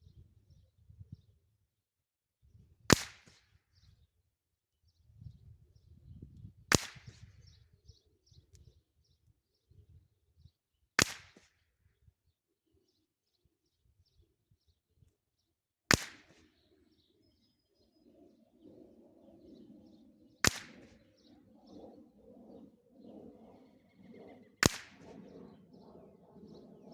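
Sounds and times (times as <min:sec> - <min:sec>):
rifle shots: 0:20.4 - 0:20.9, 0:24.6 - 0:25.2.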